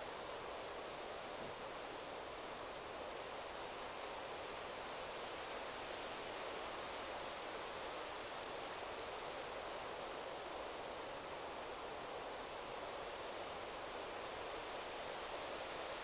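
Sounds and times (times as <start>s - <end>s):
wind rustling through trees: 0.0s - 16.0s.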